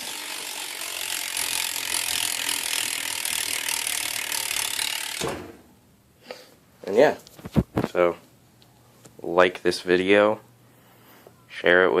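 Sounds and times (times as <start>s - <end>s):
bike freewheel ratcheting: 0.0s - 5.3s.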